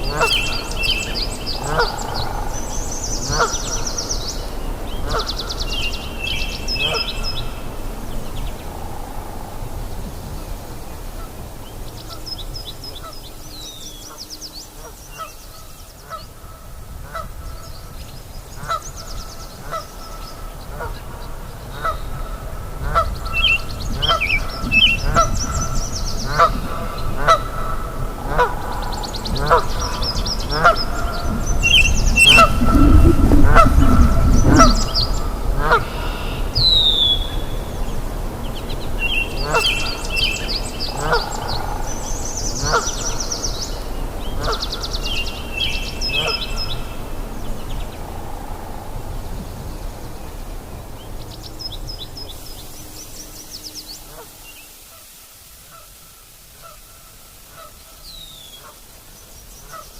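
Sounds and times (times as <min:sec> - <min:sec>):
bird honking call: 0:00.0 - 0:02.0, 0:29.4 - 0:37.3, 0:39.3 - 0:41.5
small birds chirping: 0:00.0 - 0:07.6, 0:28.3 - 0:37.8, 0:38.4 - 0:48.0.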